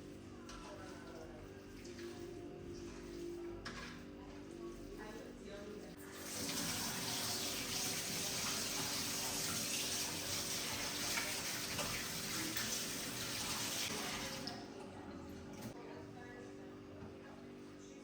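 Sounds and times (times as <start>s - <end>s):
water running from a tap: 6.0s - 14.8s.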